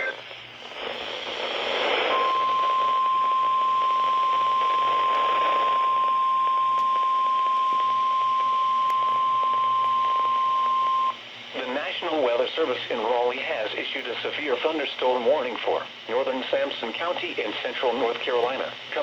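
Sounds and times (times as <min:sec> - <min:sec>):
radio hiss: 0:00.0 - 0:19.0
steady alarm tone: 0:02.2 - 0:11.2.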